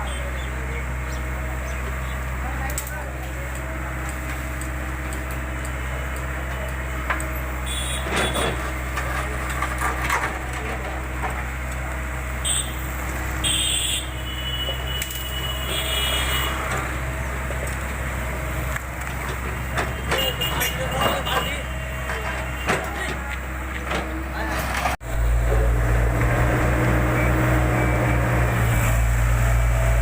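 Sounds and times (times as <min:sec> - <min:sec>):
diesel engine running: 0:00.0 - 0:30.0.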